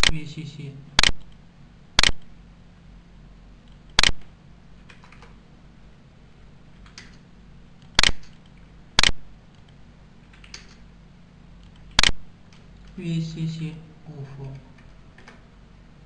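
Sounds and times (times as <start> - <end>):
computer mouse clicking: 3.7 - 4.2, 4.8 - 5.4, 6.8 - 7.2, 7.8 - 10.8, 11.6 - 13.0.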